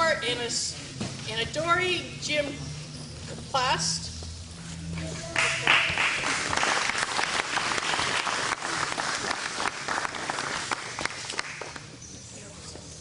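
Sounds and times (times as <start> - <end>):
crowd applauding: 5.4 - 12.0.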